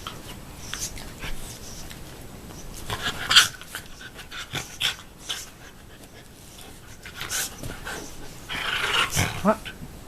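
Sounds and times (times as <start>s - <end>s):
dogs panting: 0.0s - 9.8s.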